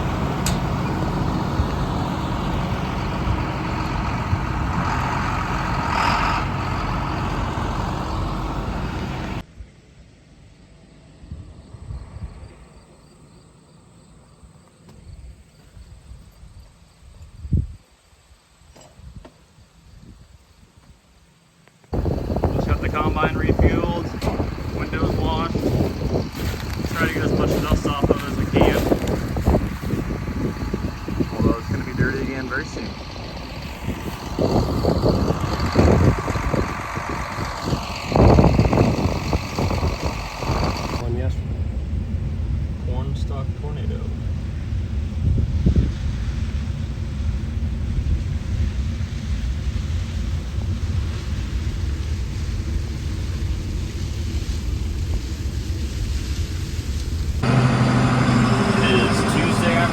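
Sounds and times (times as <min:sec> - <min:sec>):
wind buffeting microphone: 0:00.0 - 0:09.4, 0:21.9 - 0:59.9
engine humming: 0:00.0 - 0:15.8, 0:21.7 - 0:59.9
faint insect chirping: 0:10.6 - 0:22.4.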